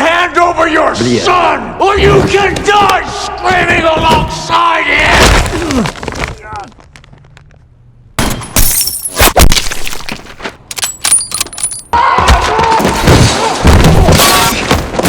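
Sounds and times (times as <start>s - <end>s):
dense continuous din: 1.0s - 8.6s, 10.2s - 15.0s
hard hits and crashes: 12.1s - 15.0s.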